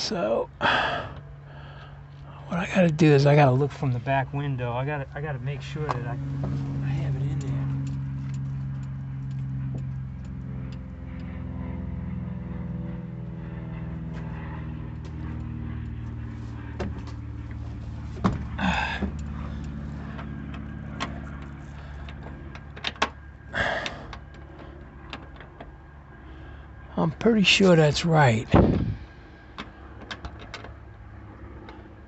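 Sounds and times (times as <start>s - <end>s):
low hum: 0.0s - 32.0s
clicks and knocks from handling parts: 16.8s - 25.9s, 29.5s - 31.8s.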